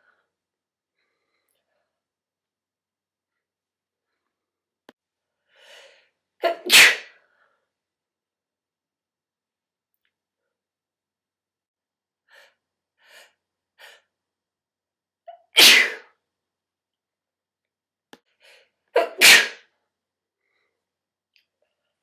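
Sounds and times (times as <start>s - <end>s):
woman sneezing: 6.4s - 7.1s, 15.5s - 16.1s, 19.0s - 19.6s.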